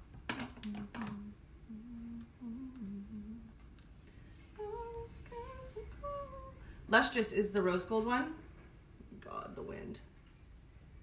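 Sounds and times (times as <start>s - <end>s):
woman humming: 0.6s - 3.6s.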